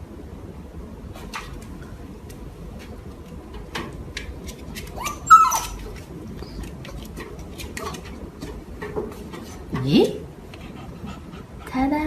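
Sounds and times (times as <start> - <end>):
dog crying: 5.0 - 5.9.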